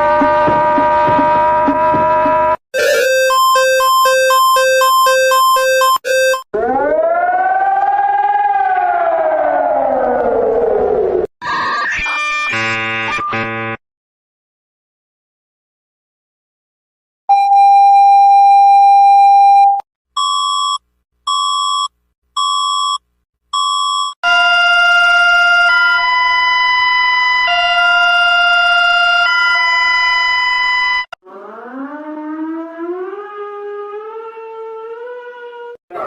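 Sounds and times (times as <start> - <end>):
siren winding up: 0.0 - 13.5, 24.3 - 35.8
loud multi-note alarm chord: 2.8 - 6.4
short beeps: 2.8 - 6.4, 17.3 - 23.0, 23.6 - 24.2
electronic alarm tones: 2.8 - 6.5, 17.3 - 23.0, 23.6 - 26.8.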